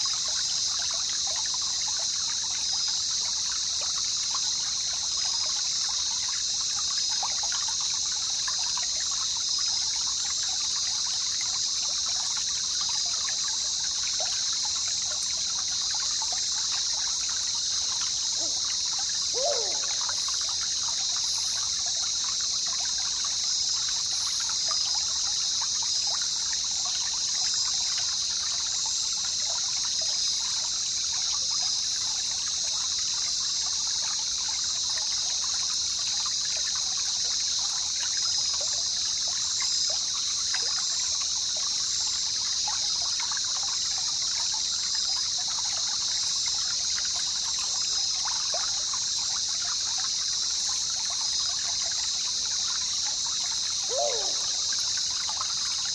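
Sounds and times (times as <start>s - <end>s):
water trickling and babbling: 0.0s - 55.9s
high-pitched hiss: 52.1s - 55.9s.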